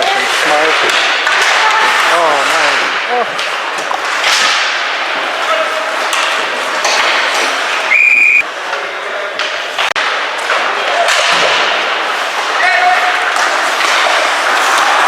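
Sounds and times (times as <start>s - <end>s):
hockey sticks and puck clacking: 0.0s - 15.0s
skates scraping on ice: 0.0s - 15.0s
referee's whistle blast: 7.9s - 8.4s.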